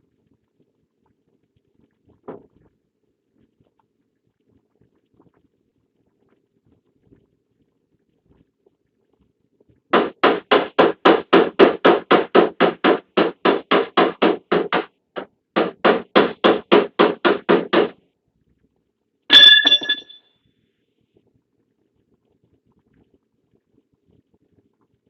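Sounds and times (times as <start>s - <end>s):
hammer tapping sheet metal: 10.0s - 17.9s, 19.3s - 20.2s
metallic strike ringing: 19.3s - 20.2s.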